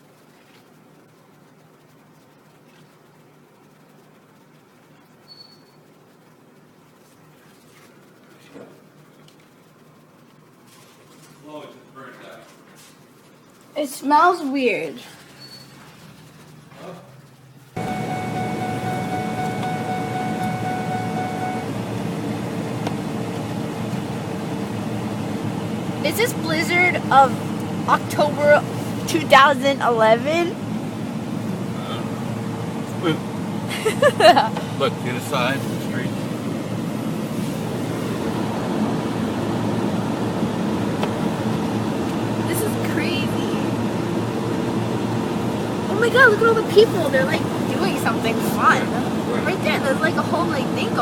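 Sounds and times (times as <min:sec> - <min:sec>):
road and engine noise in cabin: 0:14.1 - 0:51.0
vehicle rumble from inside: 0:17.2 - 0:51.0
thin whining tone: 0:17.8 - 0:30.6.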